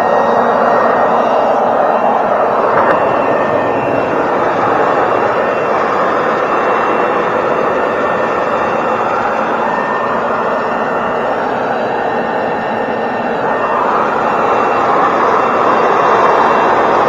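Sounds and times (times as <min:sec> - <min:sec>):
power tool noise: 0:00.0 - 0:17.0.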